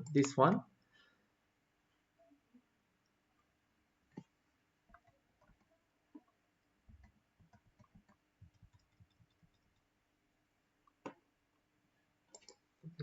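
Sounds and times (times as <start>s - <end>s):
faint computer mouse clicks: 12.3s - 12.6s.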